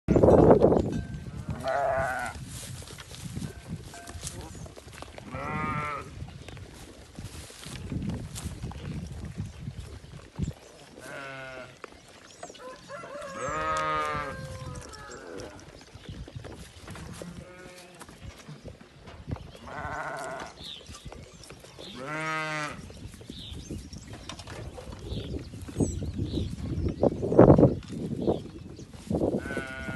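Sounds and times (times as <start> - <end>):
goats bleating: 5.2 - 6.1, 11.0 - 11.8, 13.4 - 15.5, 17.2 - 18.1, 19.6 - 20.6, 21.9 - 22.8, 29.4 - 29.9.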